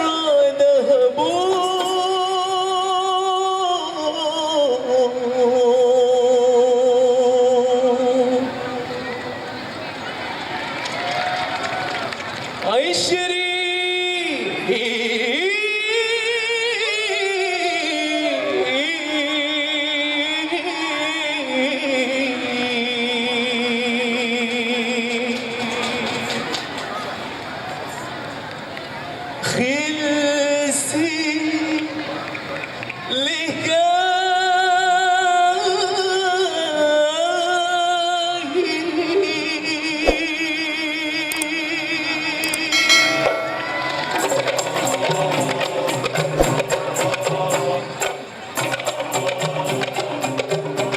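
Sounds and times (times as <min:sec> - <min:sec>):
man singing wordless melody: 0:00.0 - 0:09.0, 0:12.6 - 0:26.0, 0:29.4 - 0:32.0, 0:33.1 - 0:43.6, 0:44.2 - 0:50.9
sharp click: 0:40.0 - 0:40.3.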